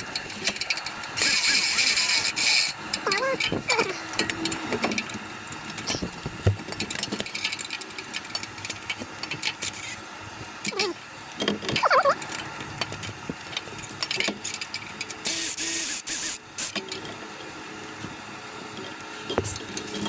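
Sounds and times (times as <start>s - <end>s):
rattling scraping rustle: 0.0s - 5.2s.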